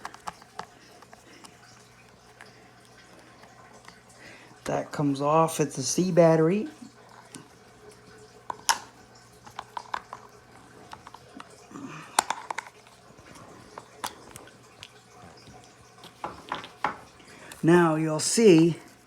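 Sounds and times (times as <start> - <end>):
plastic parts clicking and knocking: 0.0 - 1.5, 8.5 - 10.3, 10.9 - 12.9, 13.8 - 17.1.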